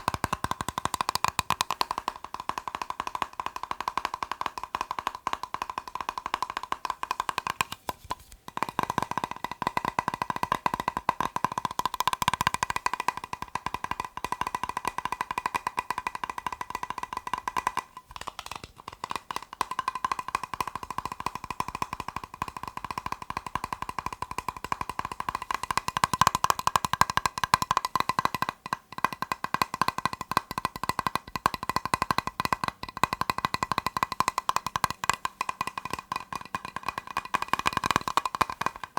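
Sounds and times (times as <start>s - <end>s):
rapid tapping on a plastic box: 0.0s - 38.9s.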